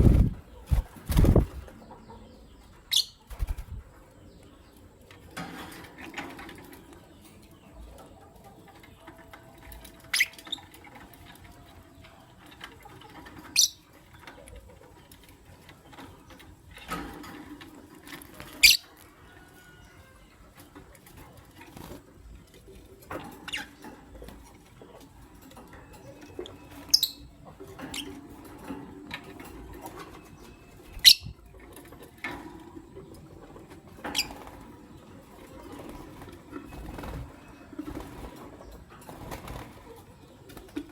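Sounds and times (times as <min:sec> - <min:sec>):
wings fluttering: 0:00.0 - 0:01.8, 0:02.9 - 0:03.9, 0:34.0 - 0:34.8, 0:35.5 - 0:40.9
bird chirps: 0:00.0 - 0:04.9, 0:13.5 - 0:13.9, 0:25.9 - 0:28.2, 0:30.2 - 0:31.4.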